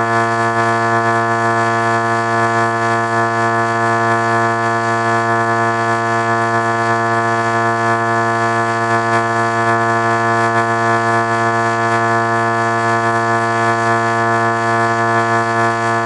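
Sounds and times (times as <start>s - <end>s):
steady chord drone: 0.0s - 16.0s.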